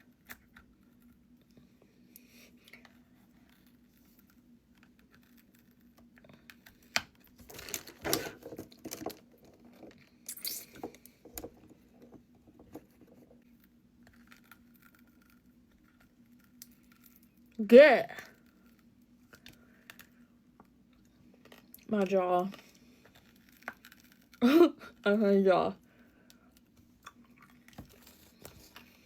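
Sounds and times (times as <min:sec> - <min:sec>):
hard candy crunching: 0:20.9 - 0:24.6
chewing: 0:27.0 - 0:29.0.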